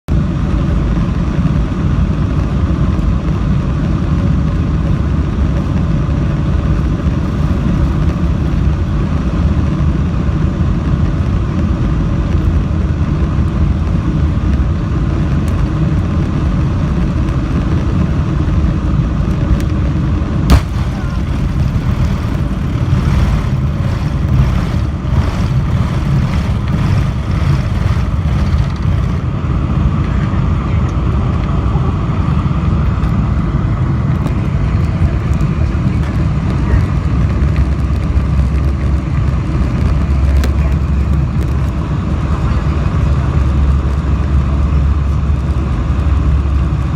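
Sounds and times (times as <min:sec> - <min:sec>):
jet engine and rolling rumble: 0:00.0 - 0:46.9
sharp crack: 0:20.5 - 0:29.3.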